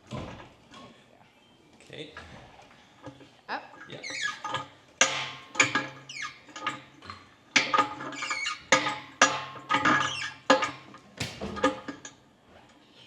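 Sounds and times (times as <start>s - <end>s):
high creaking squeaks: 3.9s - 4.5s, 8.1s - 8.7s
metal clanks: 7.6s - 12.1s.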